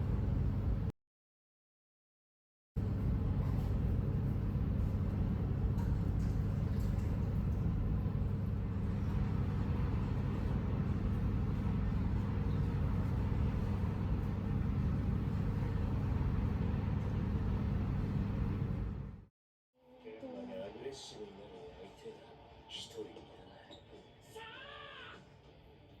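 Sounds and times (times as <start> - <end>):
vehicle interior hum and rumble: 0.0 - 0.9, 2.8 - 19.2.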